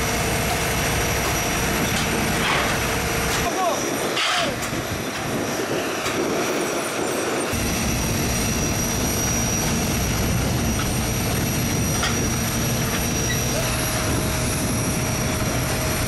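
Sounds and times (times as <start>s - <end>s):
thin high whine: 1.0s - 16.0s
low rumble: 7.6s - 16.0s.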